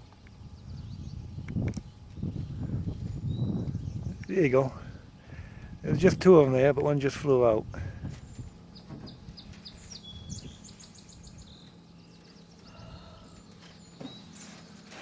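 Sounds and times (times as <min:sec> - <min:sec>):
faint low hum: 0:00.0 - 0:15.0
songbird chirping: 0:08.7 - 0:14.9.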